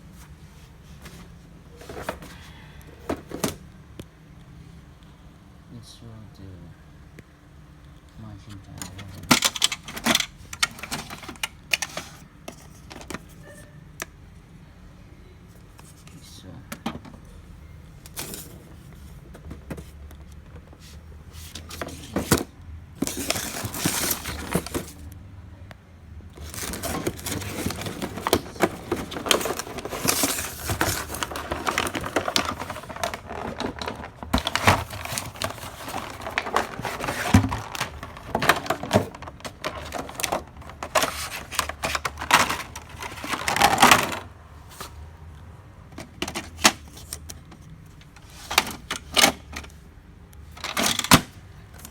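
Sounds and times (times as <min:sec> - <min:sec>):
plastic printer parts clicking: 0:08.8 - 0:13.3, 0:26.4 - 0:44.3.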